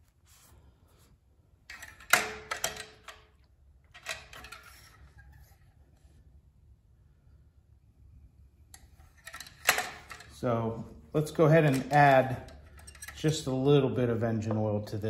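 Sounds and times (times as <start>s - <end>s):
hard parts knocking and clicking: 1.7s - 5.3s, 8.8s - 10.4s, 11.5s - 13.5s.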